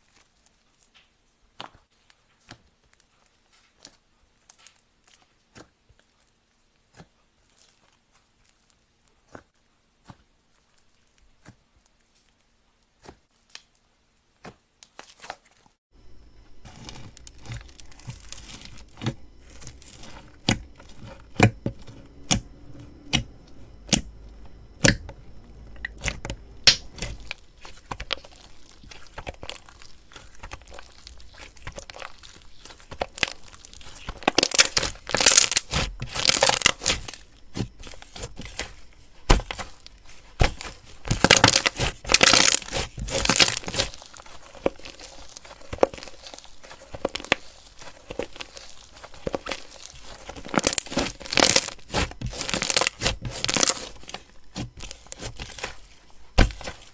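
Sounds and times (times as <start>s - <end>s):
crunchy slime crackling: 16.0s - 56.9s.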